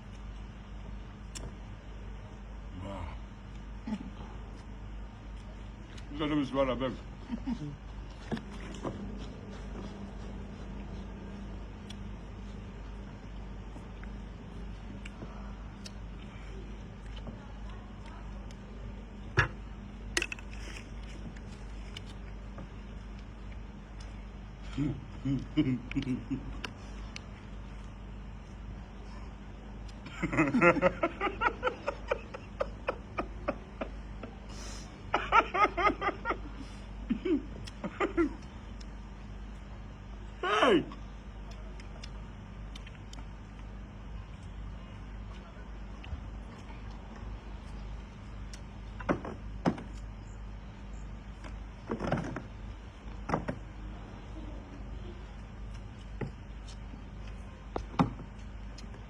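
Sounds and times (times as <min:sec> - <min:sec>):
low steady hum: 0:00.0 - 0:59.0
person laughing: 0:03.8 - 0:04.4, 0:07.2 - 0:07.9, 0:24.6 - 0:26.7, 0:30.1 - 0:38.5.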